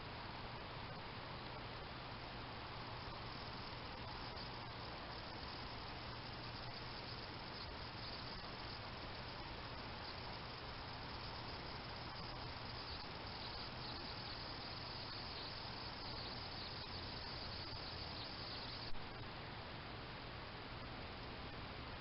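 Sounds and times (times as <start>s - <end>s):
microphone hiss: 0.0s - 22.0s
crickets chirping: 1.8s - 19.2s.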